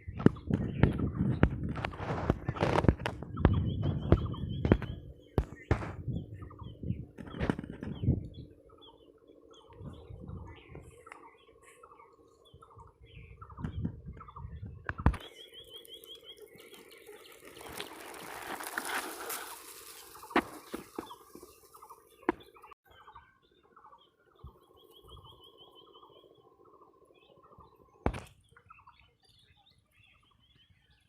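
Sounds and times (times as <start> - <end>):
low hum: 0.0 - 15.8
birds chirping: 0.0 - 31.0.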